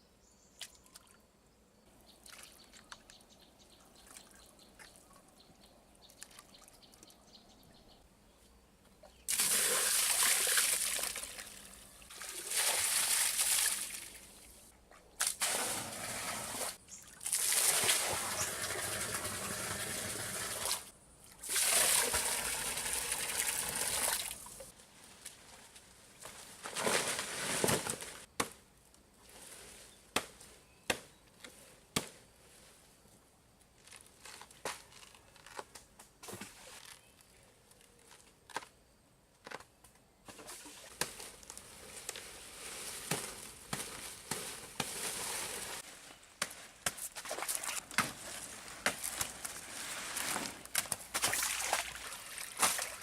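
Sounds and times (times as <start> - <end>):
water splashing and pouring: 9.3 - 14.2, 15.3 - 24.7, 51.1 - 53.0.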